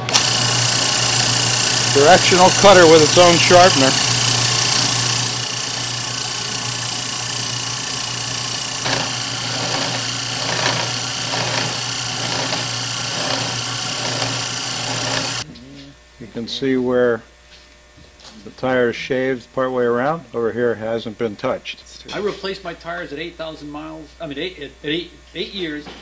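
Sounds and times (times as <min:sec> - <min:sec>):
machine cutter whirring: 0:00.0 - 0:15.4
cutter scraping rubber: 0:01.5 - 0:15.4.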